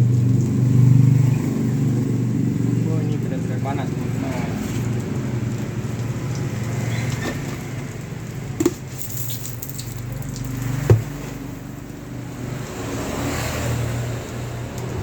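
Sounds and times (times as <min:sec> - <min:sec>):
sharp knocks: 0:10.9 - 0:11.2.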